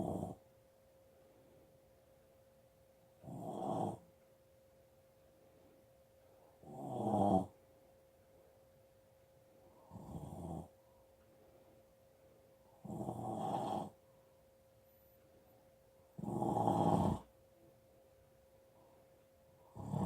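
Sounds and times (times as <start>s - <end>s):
person snoring: 0.0s - 0.4s, 3.2s - 4.0s, 6.6s - 7.6s, 9.9s - 10.7s, 12.8s - 14.0s, 16.2s - 17.3s, 19.7s - 20.0s.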